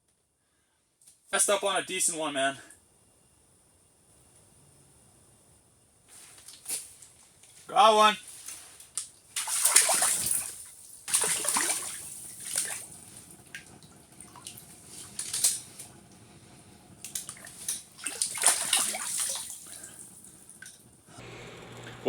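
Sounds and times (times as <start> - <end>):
water splashing and sloshing: 6.2 - 21.1.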